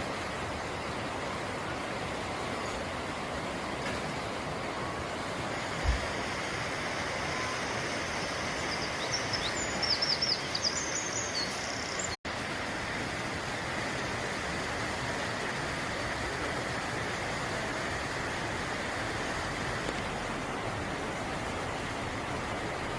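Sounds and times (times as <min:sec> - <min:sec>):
waterfall rushing: 0:00.0 - 0:22.9
small bird chirping: 0:08.6 - 0:12.2.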